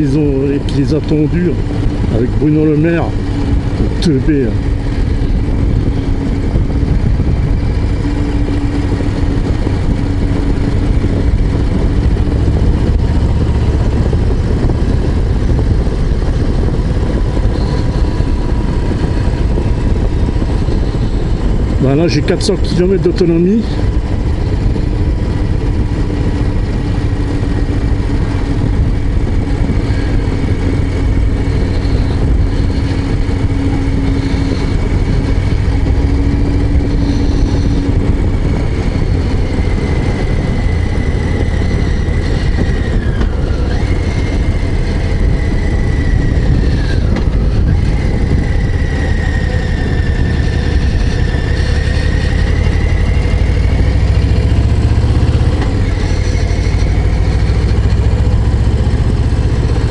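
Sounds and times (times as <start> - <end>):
motorcycle engine rumbling: 0.0 - 59.9.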